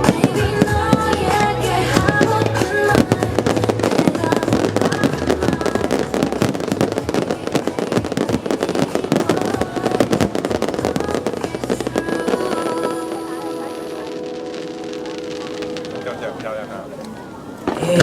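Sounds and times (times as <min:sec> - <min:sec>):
music with held notes and bass: 0:00.0 - 0:13.7
fireworks bursting and crackling: 0:00.0 - 0:18.0.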